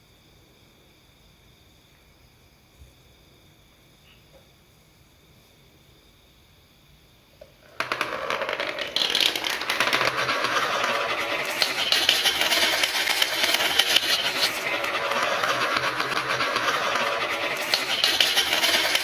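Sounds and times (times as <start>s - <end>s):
marbles rattling down wooden track: 7.6s - 19.0s.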